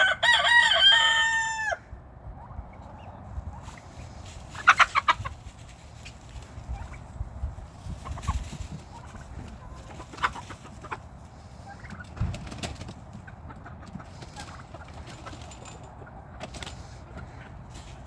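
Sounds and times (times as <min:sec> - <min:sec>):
chickens clucking: 0:02.2 - 0:18.0
turkeys gobbling: 0:02.4 - 0:05.4, 0:08.0 - 0:12.2, 0:13.2 - 0:15.4.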